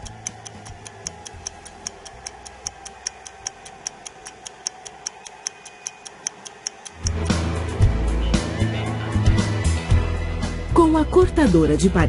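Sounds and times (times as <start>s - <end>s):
timer ticking: 0.0s - 7.4s.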